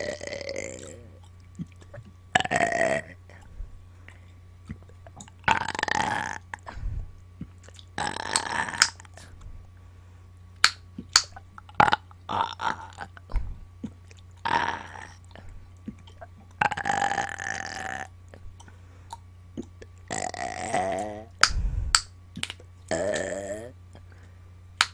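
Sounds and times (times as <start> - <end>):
woman burping: 0.0 - 1.2, 20.1 - 21.3, 22.9 - 23.8.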